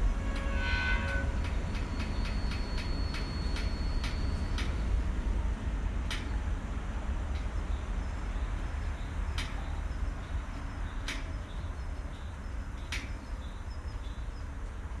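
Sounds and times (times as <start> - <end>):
train rumbling: 0.0 - 15.0
sharp clicks: 1.4 - 4.8.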